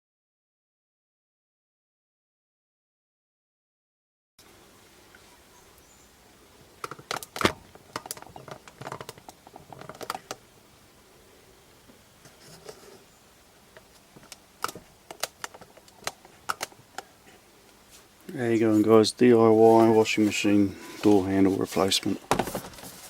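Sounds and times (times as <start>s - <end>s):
small hard objects clicking: 13.8s - 17.1s.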